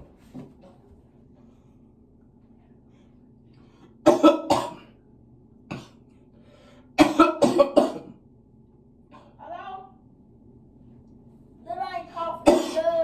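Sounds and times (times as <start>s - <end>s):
man coughing hard: 4.0s - 4.9s, 5.7s - 6.0s, 7.0s - 8.2s, 12.4s - 12.9s.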